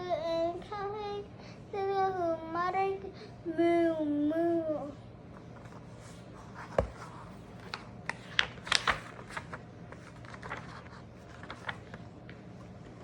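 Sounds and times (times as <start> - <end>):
book pages rustling: 5.4 - 13.0.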